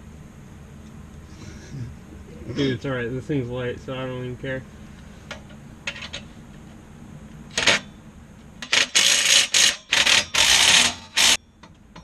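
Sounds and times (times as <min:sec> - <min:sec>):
ratchet wrench clicking: 0:08.6 - 0:11.4.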